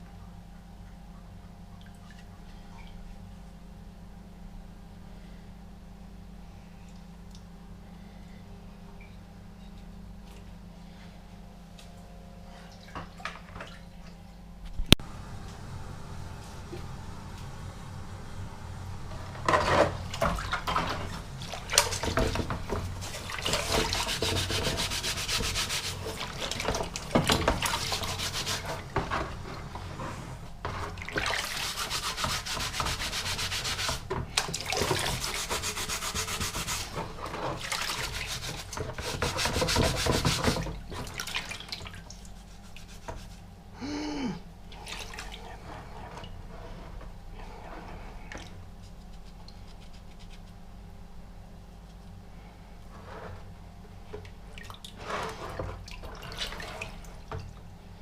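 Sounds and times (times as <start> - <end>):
scrubbing metal helmet: 19.5 - 34.2, 34.8 - 40.7.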